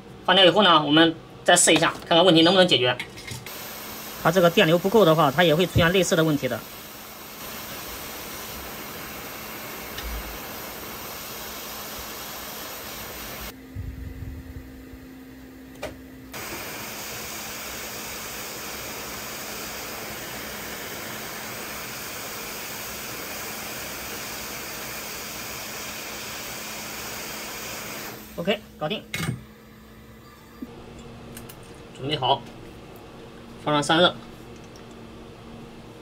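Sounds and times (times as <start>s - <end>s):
hot air blower hissing: 3.5s - 13.8s, 15.8s - 29.0s
low steady hum: 13.4s - 16.4s.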